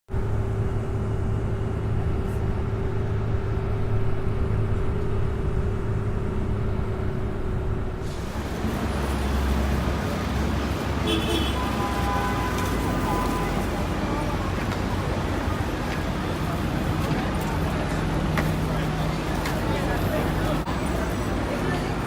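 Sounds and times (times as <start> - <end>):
rough noisy rumble: 0.1 - 22.0
vehicle engine humming: 0.1 - 22.0.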